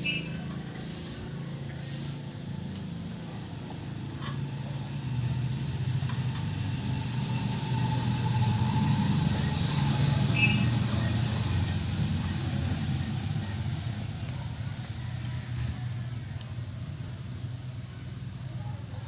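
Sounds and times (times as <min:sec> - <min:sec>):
vehicle engine humming: 0:00.0 - 0:19.0.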